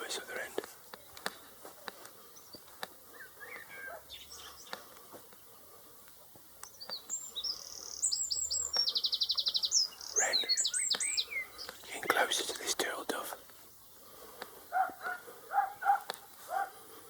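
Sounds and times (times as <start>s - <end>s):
faint bird chirps: 0.0s - 14.1s
songbird singing with trill: 2.2s - 5.6s, 6.2s - 12.6s.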